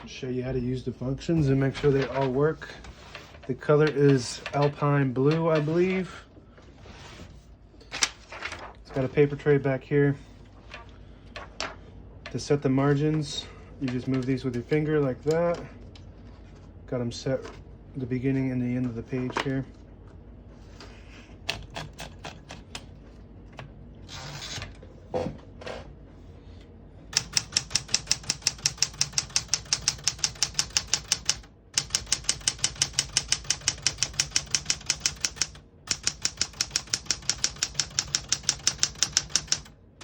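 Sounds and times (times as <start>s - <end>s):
manual typewriter typing: 21.5s - 22.9s, 27.1s - 39.8s.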